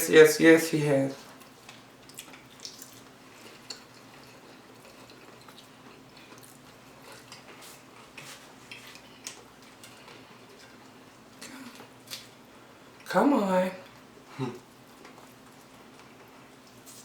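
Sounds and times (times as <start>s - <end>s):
faint steady hum: 0.0s - 17.0s
chewing and mouth noises: 1.2s - 12.4s.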